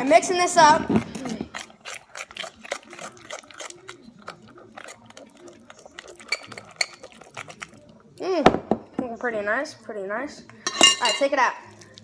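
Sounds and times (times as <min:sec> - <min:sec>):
spoon stirring slime in a bowl: 0:00.0 - 0:08.2, 0:10.4 - 0:12.0
spoon clinking against bowl: 0:06.2 - 0:07.1, 0:10.6 - 0:11.4.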